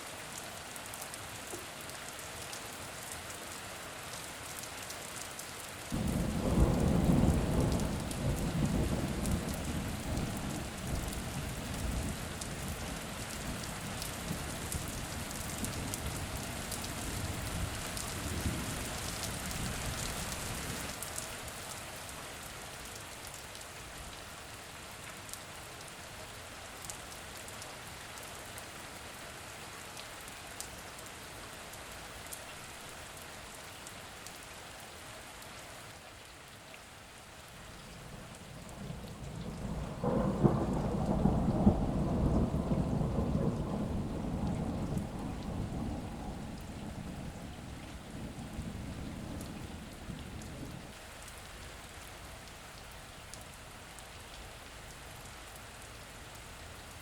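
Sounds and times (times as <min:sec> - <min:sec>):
steady rain falling: 0:00.0 - 0:57.0
thunder rumbling: 0:06.0 - 0:12.8, 0:38.0 - 0:50.9.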